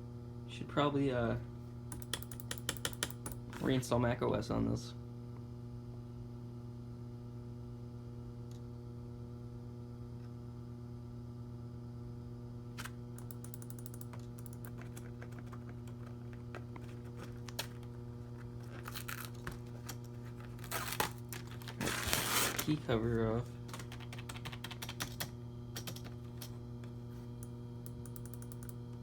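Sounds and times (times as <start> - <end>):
low electrical hum: 0.0 - 29.0
laptop keys clicking: 1.9 - 3.4, 13.2 - 16.4, 23.7 - 26.6, 27.9 - 28.8.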